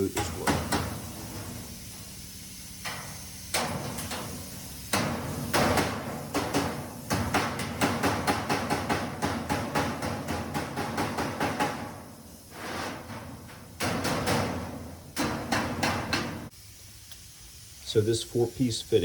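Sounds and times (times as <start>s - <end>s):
hammer on sheet metal: 0.2s - 1.6s, 3.6s - 16.5s.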